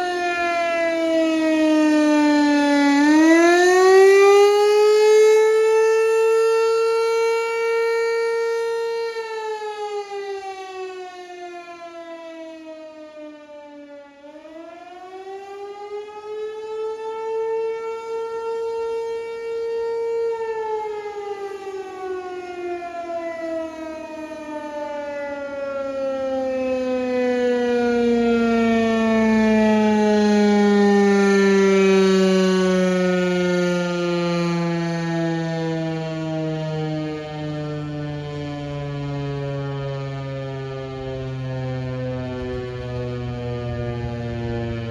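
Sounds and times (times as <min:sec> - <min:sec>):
outdoor warning siren: 0:00.0 - 0:44.9.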